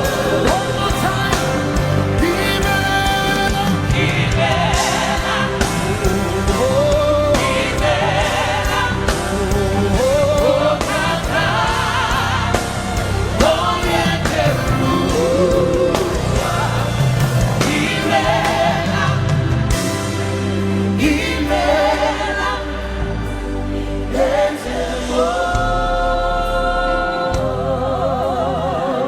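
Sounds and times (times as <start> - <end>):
person singing: 0.0 - 19.5
band playing gospel music: 0.0 - 29.0
choir singing: 0.0 - 29.0.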